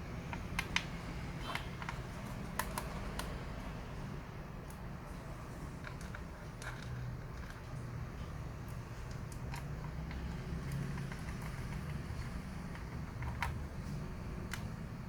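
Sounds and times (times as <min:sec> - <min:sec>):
small screws clicking and tapping: 0:09.1 - 0:14.7.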